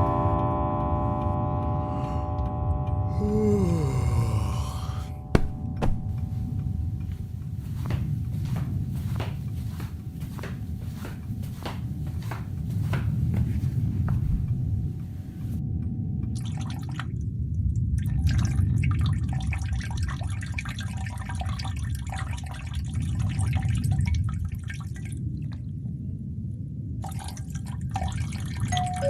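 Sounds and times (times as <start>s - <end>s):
steady low rumble: 0.0s - 20.4s
water dripping and trickling: 16.3s - 25.7s, 27.0s - 29.0s.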